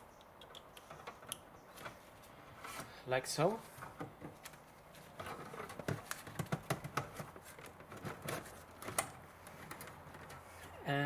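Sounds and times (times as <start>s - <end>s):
plastic parts clicking and knocking: 3.9s - 10.4s.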